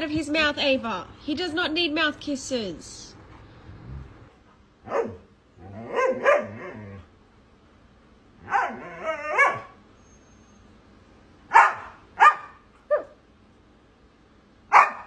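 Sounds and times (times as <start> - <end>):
dog barking and yowling: 4.8 - 7.1, 8.4 - 10.3, 11.5 - 13.2, 14.7 - 15.0.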